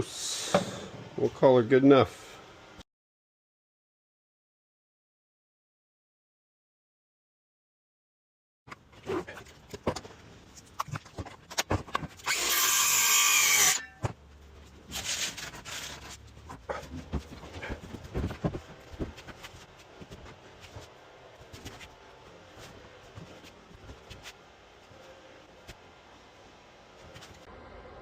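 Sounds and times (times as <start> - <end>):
power tool running: 12.2 - 13.9.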